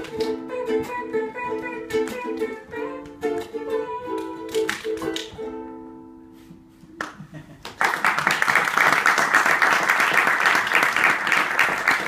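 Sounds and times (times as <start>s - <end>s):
audience applause: 7.0s - 12.0s.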